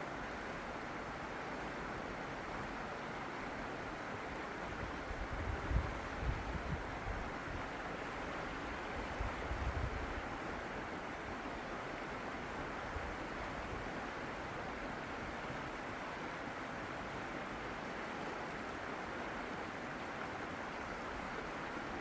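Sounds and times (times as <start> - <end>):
rushing water: 6.8 - 22.0.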